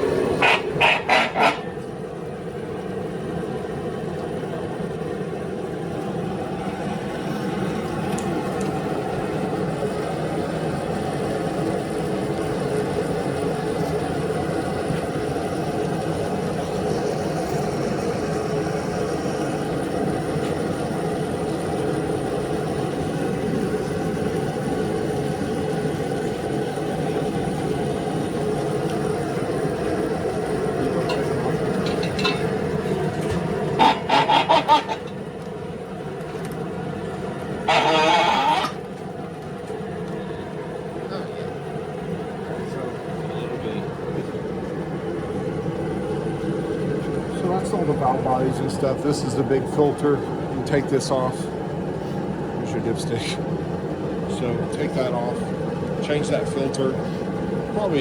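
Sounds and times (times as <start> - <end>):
heater whirring and humming: 0.0 - 58.0.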